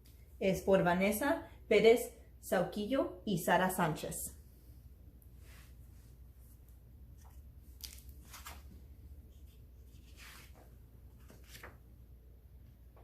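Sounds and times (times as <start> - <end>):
book pages turning: 7.1 - 12.0.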